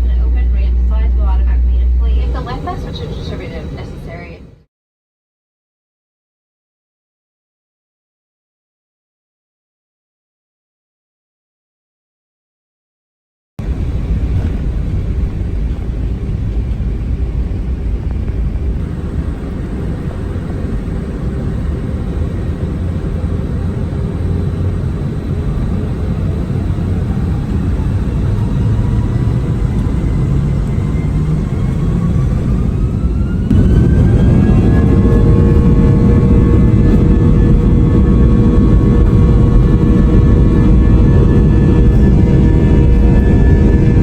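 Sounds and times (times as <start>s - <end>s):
jet engine rumble in cabin: 0.0s - 4.7s, 13.6s - 44.0s
jet engine whine spooling up: 0.0s - 4.7s, 13.6s - 44.0s.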